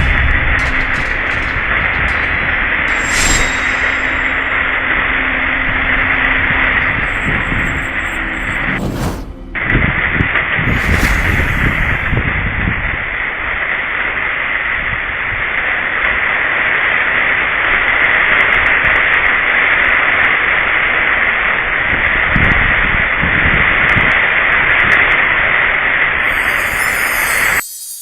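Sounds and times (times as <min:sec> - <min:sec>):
wind rumbling on microphone: 0:00.0 - 0:13.1.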